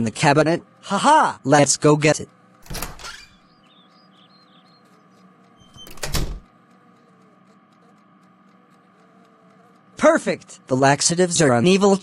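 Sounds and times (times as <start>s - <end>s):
cabinet door sliding open: 2.6s - 3.4s, 5.7s - 6.4s
faint bird chirps: 2.8s - 6.1s.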